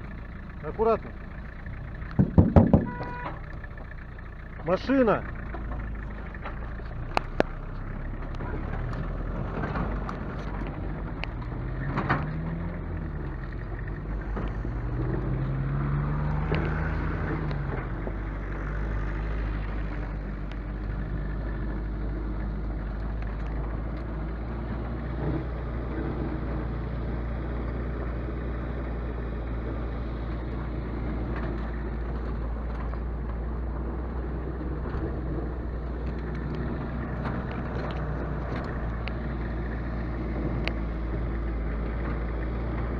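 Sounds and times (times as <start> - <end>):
vehicle engine driving: 0.0 - 42.9.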